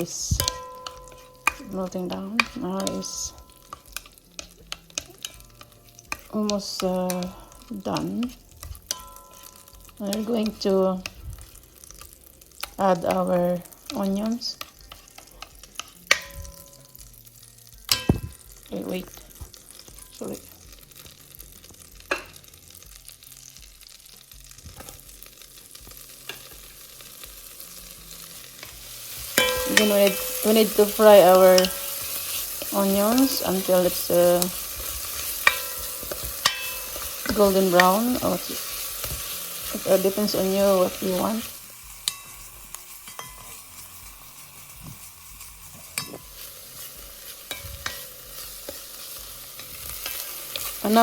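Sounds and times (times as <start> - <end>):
onions sizzling in a pan: 0.0 - 51.0
utensil clinking against metal pan: 0.4 - 1.8, 8.9 - 10.2, 29.4 - 32.2, 35.2 - 38.0
utensil knocking against pan: 17.9 - 18.4.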